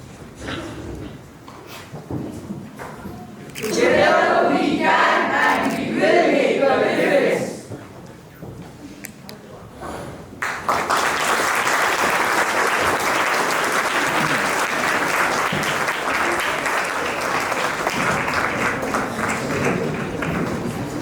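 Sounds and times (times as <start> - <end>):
audience applauding: 10.4 - 21.0.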